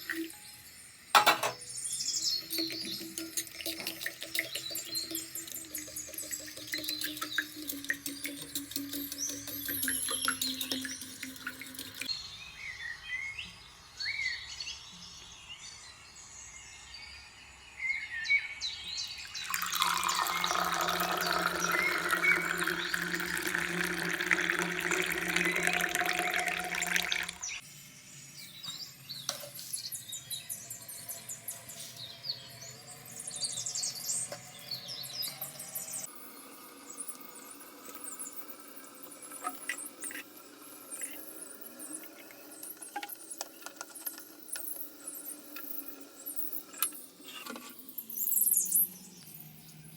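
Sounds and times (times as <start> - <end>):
water running from a tap: 2.6 - 12.1, 19.3 - 27.6.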